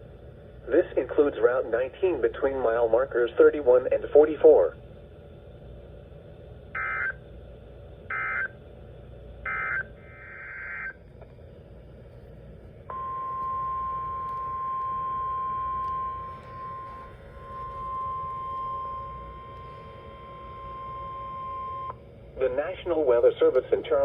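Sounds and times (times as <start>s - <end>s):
steady alarm tone: 6.7s - 7.2s, 8.1s - 8.6s, 9.4s - 11.0s, 12.9s - 22.5s.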